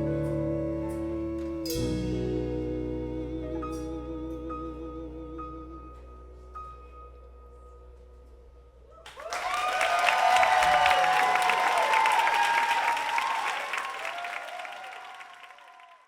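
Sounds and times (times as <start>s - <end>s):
audience applause: 9.0s - 16.0s
shouted cheers: 9.0s - 16.0s.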